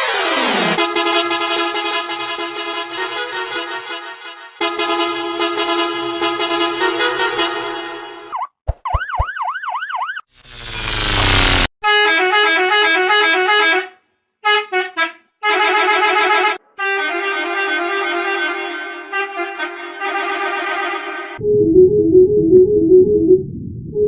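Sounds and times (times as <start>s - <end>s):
bus horns: 1.5s - 8.1s, 11.8s - 20.9s
warbling tone: 21.4s - 24.0s.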